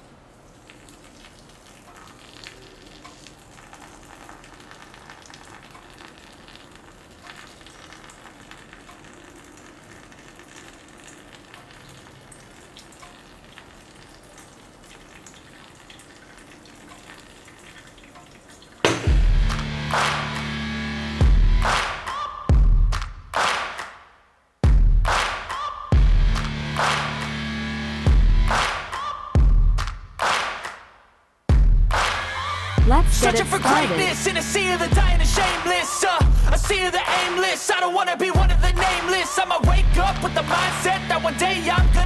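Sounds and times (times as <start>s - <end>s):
crackling hiss with small pops: 0.5s - 11.7s
loud music with heavy bass: 26.0s - 29.8s, 31.8s - 37.1s, 38.4s - 42.0s.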